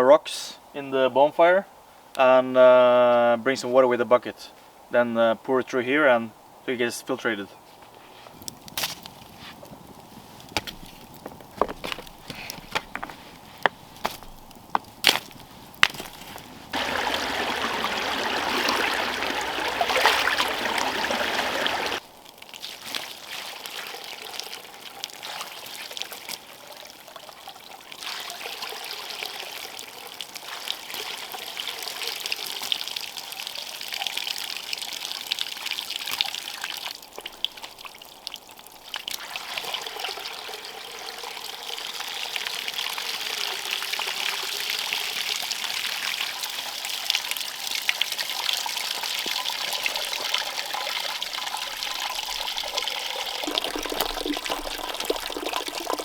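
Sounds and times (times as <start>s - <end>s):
water trickling and dribbling: 8.3s - 56.0s
water pouring heavily: 15.7s - 56.0s.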